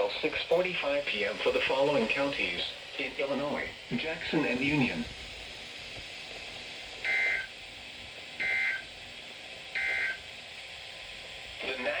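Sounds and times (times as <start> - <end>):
steady hiss: 0.0 - 12.0
two-tone digital data bursts: 8.4 - 8.8.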